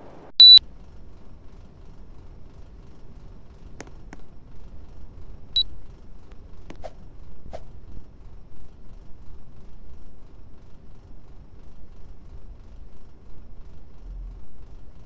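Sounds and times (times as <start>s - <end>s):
air conditioner beep: 0.4s - 0.6s.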